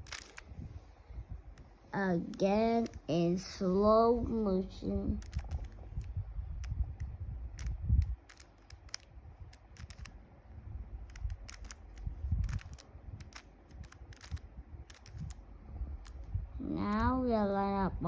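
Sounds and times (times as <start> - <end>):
puzzle cube clicking and rattling: 0.0 - 0.4, 2.2 - 3.3, 5.2 - 6.8, 7.6 - 10.2, 11.0 - 15.4, 16.0 - 16.3.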